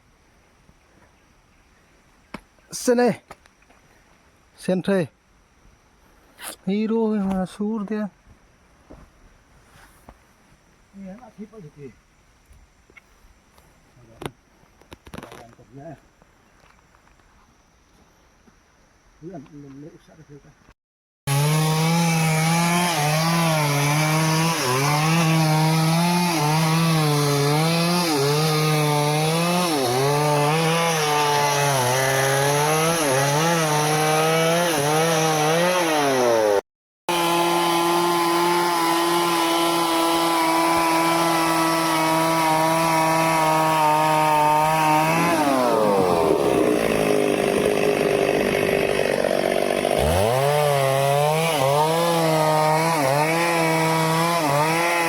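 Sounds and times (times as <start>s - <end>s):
chainsaw cutting wood: 21.3s - 55.0s.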